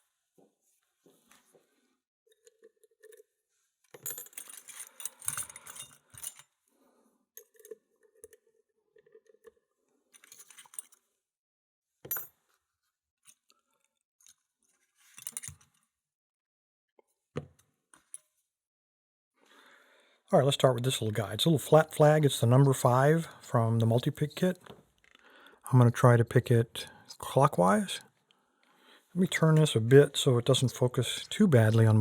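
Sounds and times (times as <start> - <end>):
lock-picking tools clinking: 3.9 - 6.6.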